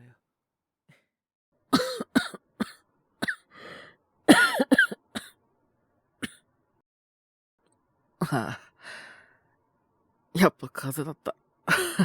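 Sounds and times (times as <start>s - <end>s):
person coughing: 1.8s - 3.4s, 4.3s - 5.3s.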